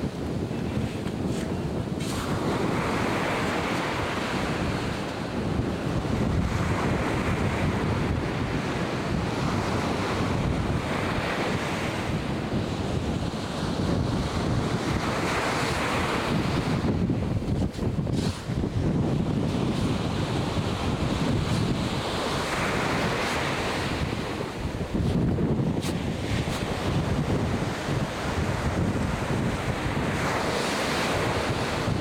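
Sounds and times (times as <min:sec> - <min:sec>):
wind rumbling on microphone: 0:00.0 - 0:32.0
surf breaking: 0:15.1 - 0:32.0.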